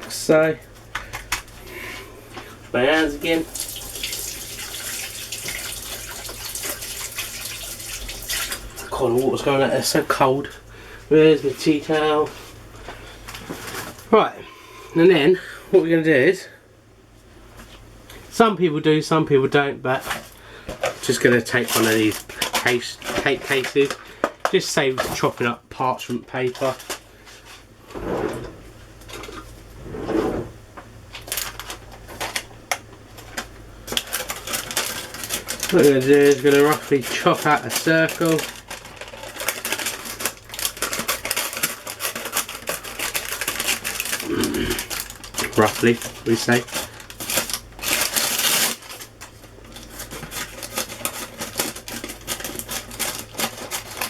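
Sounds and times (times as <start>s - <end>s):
paper cake cases crinkling: 20.0s - 27.7s, 31.1s - 54.0s
scissors snipping paper: 49.8s - 54.0s.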